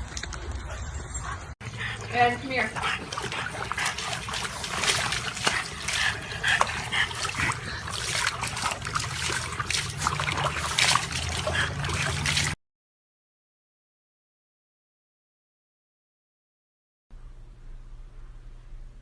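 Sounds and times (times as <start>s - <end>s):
water splashing and trickling: 0.0s - 12.6s.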